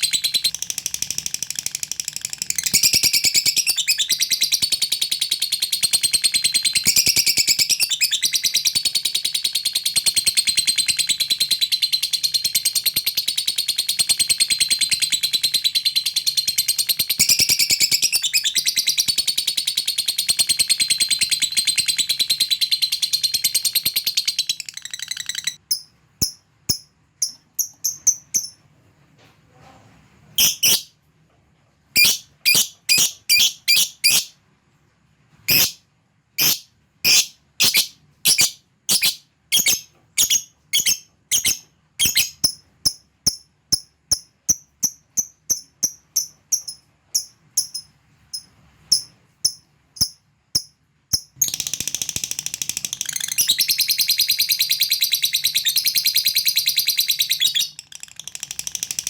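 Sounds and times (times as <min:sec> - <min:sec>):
bird chattering trill: 0:00.0 - 0:28.6, 0:30.4 - 0:30.9, 0:32.0 - 0:34.3, 0:35.5 - 0:35.8, 0:36.4 - 0:50.2
short sharp bird chirps: 0:30.4 - 0:30.9, 0:32.0 - 0:34.4, 0:36.4 - 0:42.4.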